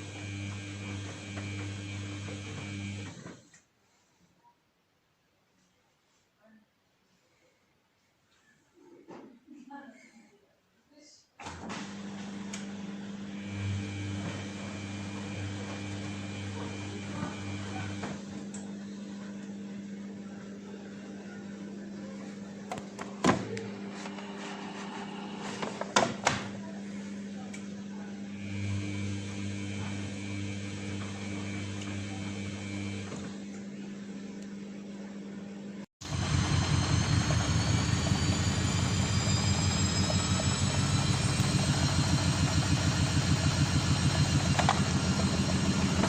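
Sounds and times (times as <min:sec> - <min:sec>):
washing machine drum motor whine: 0:00.0 - 0:03.2, 0:11.8 - 0:25.5, 0:28.2 - 0:34.1, 0:35.2 - 0:46.0.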